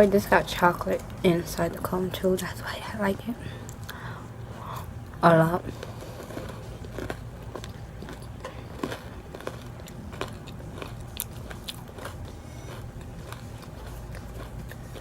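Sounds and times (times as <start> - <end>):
low steady hum: 0.0 - 15.0
chewing ice cream cone: 3.7 - 15.0
sharp crunches: 5.8 - 15.0.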